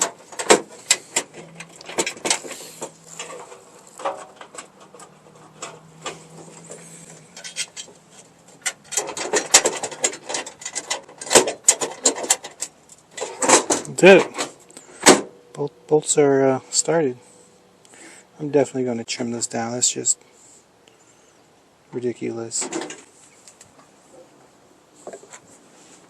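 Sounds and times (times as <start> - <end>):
metallic clicks and scrapes of tools: 0.0 - 14.9.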